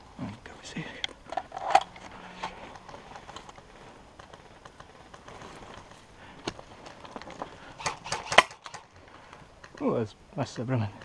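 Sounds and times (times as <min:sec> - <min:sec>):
gear rustling: 0:01.2 - 0:09.8
soft footsteps: 0:01.9 - 0:07.8.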